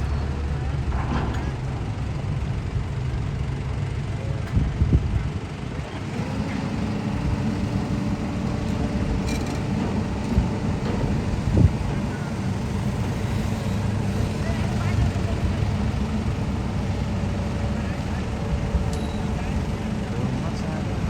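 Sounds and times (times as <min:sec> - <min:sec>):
engine humming: 0:05.4 - 0:21.0.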